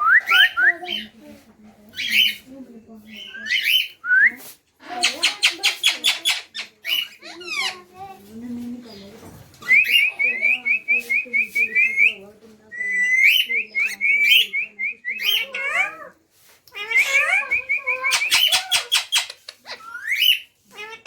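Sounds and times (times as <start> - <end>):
parrot chirping: 4.9 - 7.9, 16.8 - 21.0
parrot squawks: 16.8 - 21.0.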